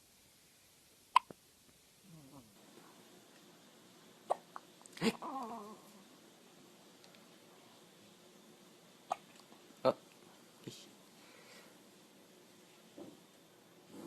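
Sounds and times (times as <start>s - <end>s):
baby hiccupping: 4.3s - 5.9s.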